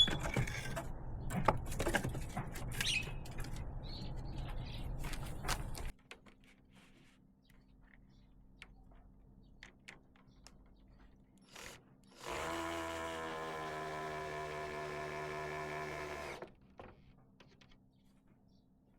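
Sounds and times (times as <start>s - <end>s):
power tool motor running: 11.5s - 16.5s.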